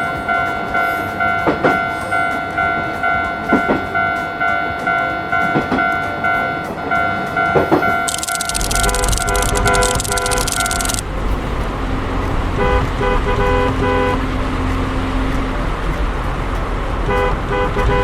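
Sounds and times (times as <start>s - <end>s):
short electronic tooting beeps: 8.1s - 11.0s.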